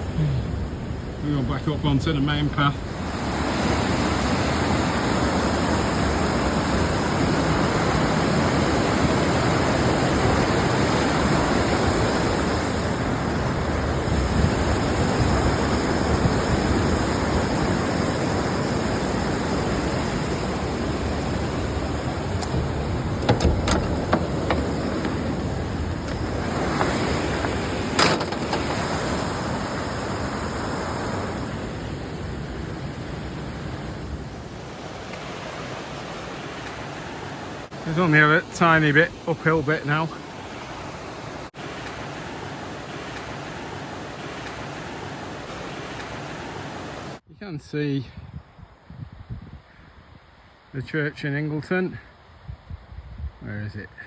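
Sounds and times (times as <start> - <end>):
river rushing through rock channel: 0.0 - 32.2.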